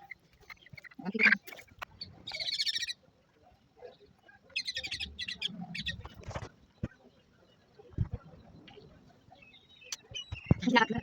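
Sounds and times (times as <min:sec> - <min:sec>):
birds chirping in high trills: 0:00.0 - 0:03.0, 0:04.5 - 0:06.1.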